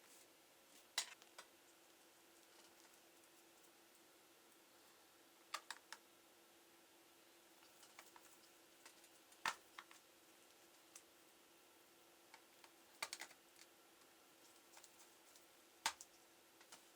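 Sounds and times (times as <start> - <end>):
faint steady hum: 0.0 - 16.9
laptop clicks and taps: 5.6 - 6.0, 13.0 - 13.4.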